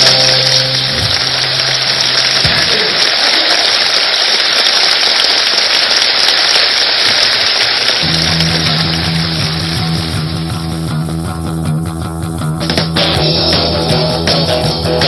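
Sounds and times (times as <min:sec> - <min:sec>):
audience applauding: 0:00.0 - 0:11.1
low held amplifier note: 0:08.0 - 0:15.0.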